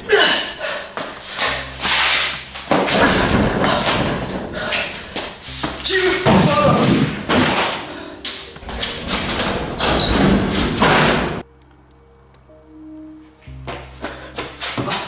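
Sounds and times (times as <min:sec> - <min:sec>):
loud thumps and bangs: 0:02.6 - 0:07.7, 0:08.6 - 0:11.4.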